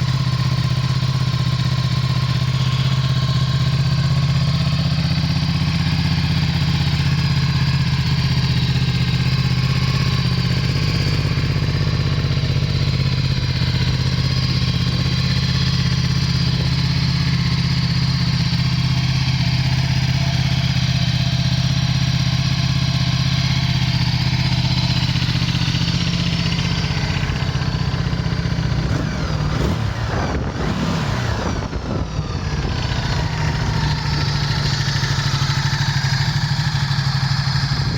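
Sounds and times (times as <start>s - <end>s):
motorcycle engine idling and revving: 0.0s - 37.9s.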